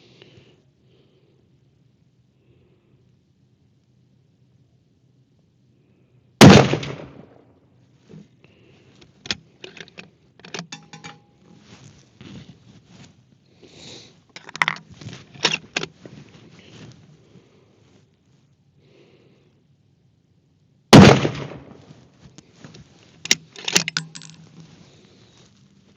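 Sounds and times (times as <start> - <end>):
rifle shot: 6.4 - 7.4, 20.9 - 21.8.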